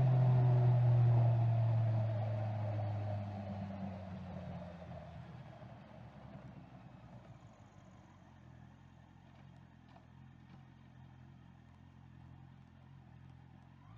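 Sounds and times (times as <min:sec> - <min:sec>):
faint motorcycle engine idling: 0:02.8 - 0:13.9.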